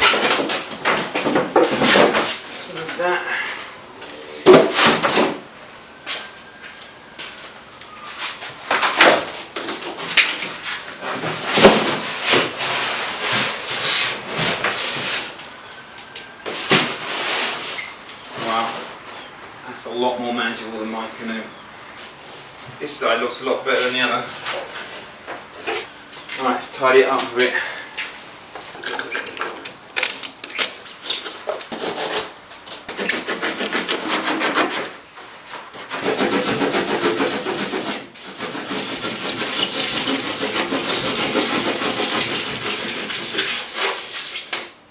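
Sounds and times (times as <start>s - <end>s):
foam kayak scraping and knocking: 28.7s - 44.6s.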